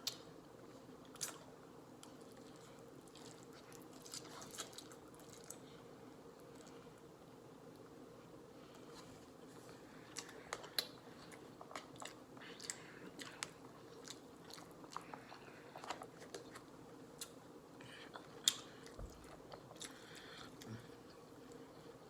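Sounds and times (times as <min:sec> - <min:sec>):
chewing smacks: 0:10.1 - 0:17.4.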